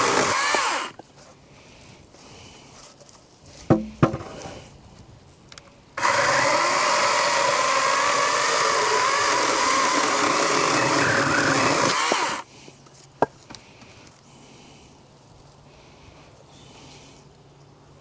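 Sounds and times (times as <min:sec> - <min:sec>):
chainsaw cutting wood: 0:00.0 - 0:01.0, 0:06.0 - 0:12.4
sharp knocks: 0:03.7 - 0:04.4.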